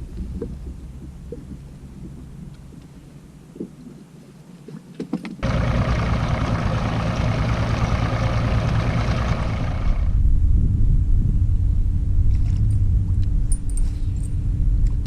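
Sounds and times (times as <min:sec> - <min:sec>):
outboard motor throttling up: 0:05.4 - 0:10.2.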